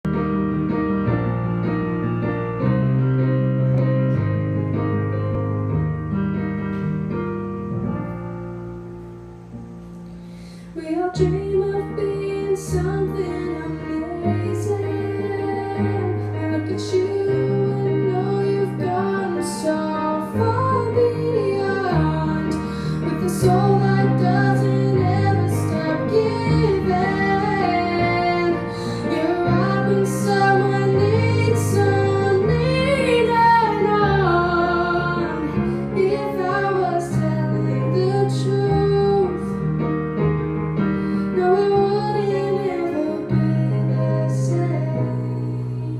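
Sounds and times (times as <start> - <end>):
instrumental backing with bass: 0.0 - 12.2
woman singing: 10.8 - 39.6, 41.2 - 45.9.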